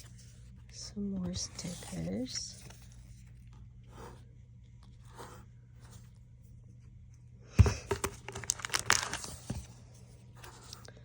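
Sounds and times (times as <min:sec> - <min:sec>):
packaging rustling: 0:07.8 - 0:09.7
crinkling and clicking: 0:07.9 - 0:09.6.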